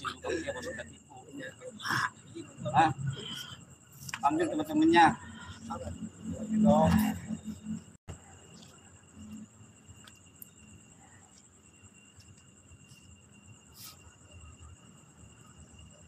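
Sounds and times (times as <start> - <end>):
insects trilling: 0.0 - 16.0.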